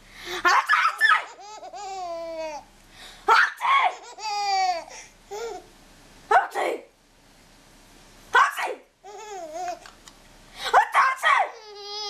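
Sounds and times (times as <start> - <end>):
baby laughing and squealing: 0.4 - 2.7, 3.3 - 5.7, 9.0 - 9.8, 10.8 - 12.0.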